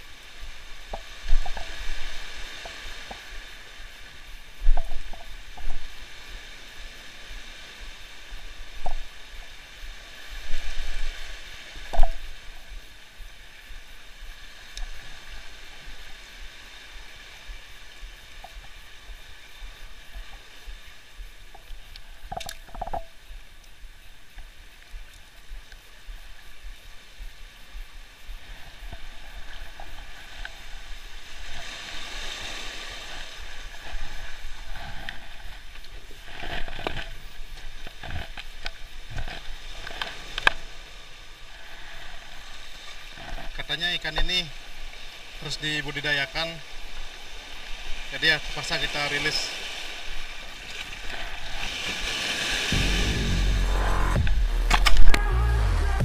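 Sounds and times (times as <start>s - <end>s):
wind rumbling on microphone: 0.0s - 43.6s
sea water washing on shoreline: 0.0s - 53.0s.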